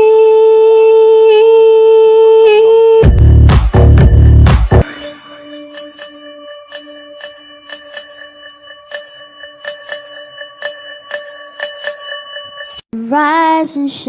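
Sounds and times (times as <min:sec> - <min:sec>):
held low tone: 0:00.0 - 0:12.8
bell-like alarm chimes: 0:03.0 - 0:12.9.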